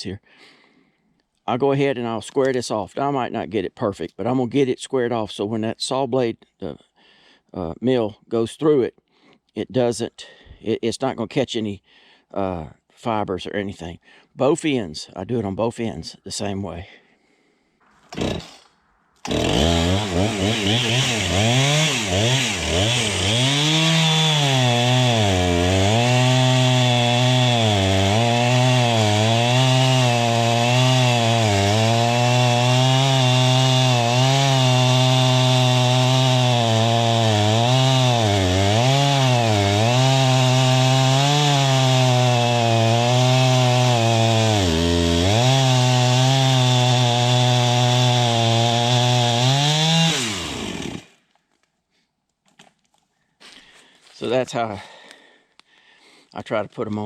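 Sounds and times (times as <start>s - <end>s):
chainsaw cutting wood: 18.0s - 51.3s.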